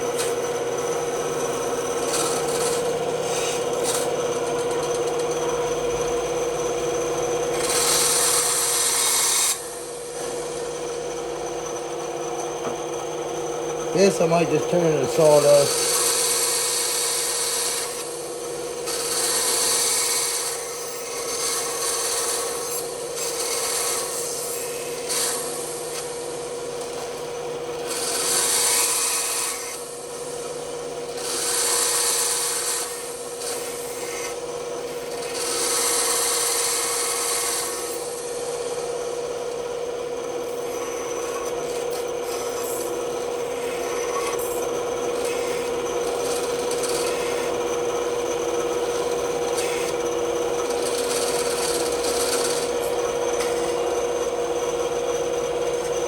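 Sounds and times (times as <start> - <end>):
bandsaw humming: 0.0 - 18.1, 40.3 - 56.0
saw blade cutting wood: 14.0 - 18.1, 40.7 - 47.6, 50.6 - 54.2.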